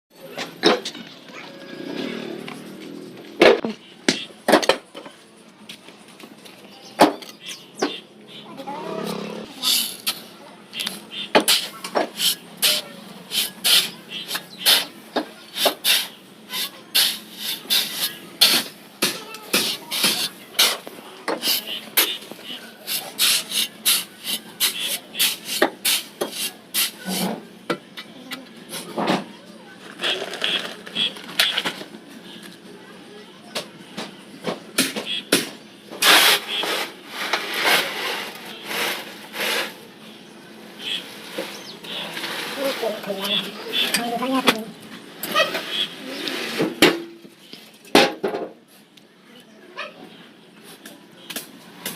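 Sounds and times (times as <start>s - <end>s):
tool scraping wet mortar: 11.4s - 14.9s, 15.5s - 27.4s, 36.0s - 39.8s.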